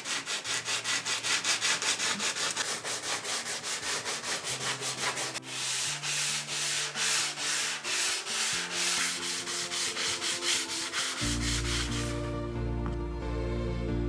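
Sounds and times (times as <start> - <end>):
abrasive rubbing strokes: 0.0 - 12.7
background music: 4.0 - 14.0.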